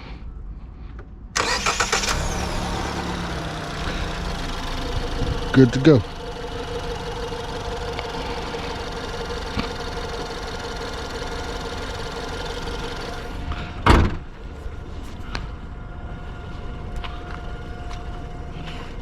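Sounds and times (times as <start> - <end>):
car engine idling: 1.4 - 13.6.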